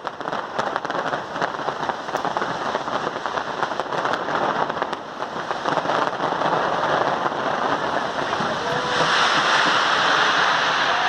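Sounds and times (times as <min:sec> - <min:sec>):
fireworks crackling: 0:00.0 - 0:11.0.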